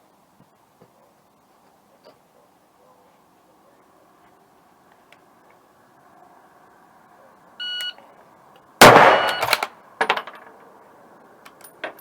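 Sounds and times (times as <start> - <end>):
short electronic beep: 7.6 - 8.0
loud gunshot: 8.8 - 9.6
weaker sharp crack: 8.8 - 9.7.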